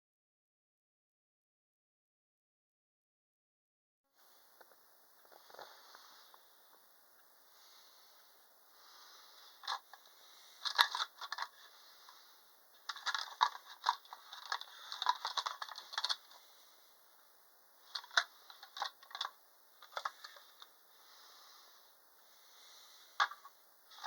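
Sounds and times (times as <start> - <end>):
small hard objects clicking: 12.9 - 16.4.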